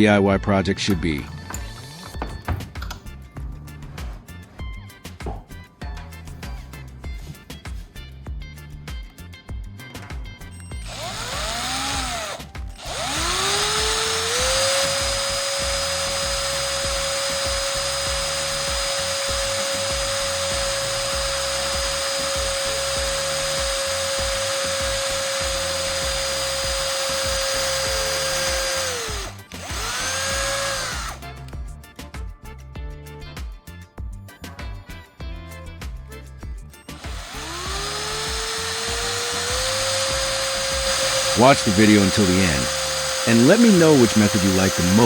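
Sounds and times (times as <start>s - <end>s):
background music: 0.0s - 45.0s
electric drill whining: 10.6s - 31.4s, 36.9s - 45.0s.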